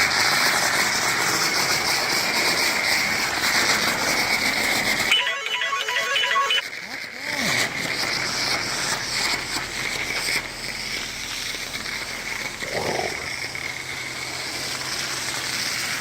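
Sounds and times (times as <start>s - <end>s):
pressure washer spraying water: 0.0s - 5.1s, 6.7s - 16.0s
low hum: 7.6s - 16.0s.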